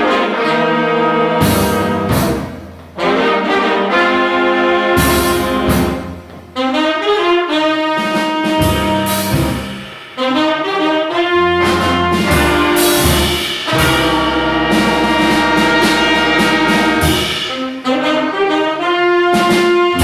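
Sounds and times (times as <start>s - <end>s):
wind band playing jazz: 0.0s - 20.0s.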